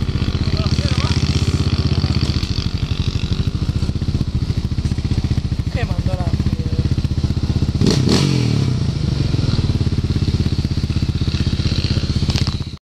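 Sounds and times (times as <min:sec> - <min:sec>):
atv engine running: 0:00.0 - 0:12.8.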